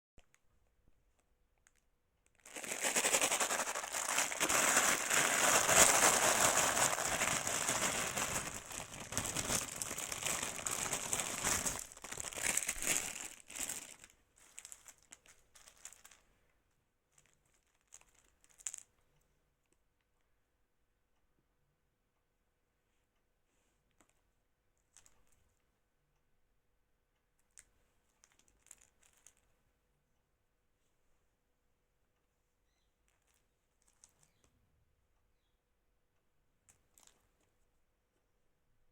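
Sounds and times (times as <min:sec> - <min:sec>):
plastic crinkling and rustling: 0:01.6 - 0:16.4, 0:17.1 - 0:18.9, 0:28.2 - 0:29.5, 0:36.8 - 0:37.6.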